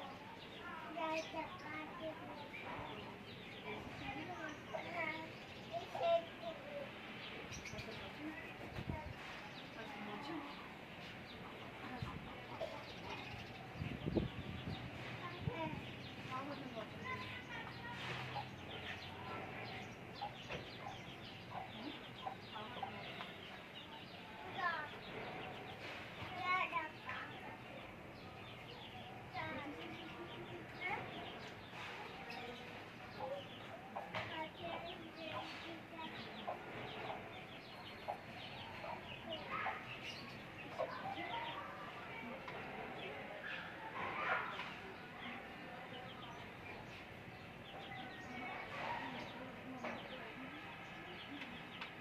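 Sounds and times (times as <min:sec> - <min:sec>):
chicks peeping: 0:07.8 - 0:45.0.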